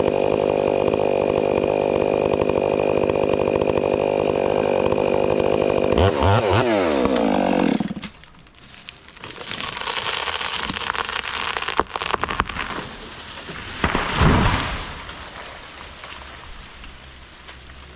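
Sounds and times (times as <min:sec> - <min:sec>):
chainsaw cutting: 0:00.0 - 0:08.4, 0:09.1 - 0:17.9
debris rustling: 0:07.8 - 0:17.9
tree branches swishing and cracking: 0:08.0 - 0:11.0, 0:12.4 - 0:17.9
tree falling heavy thud: 0:12.1 - 0:16.8.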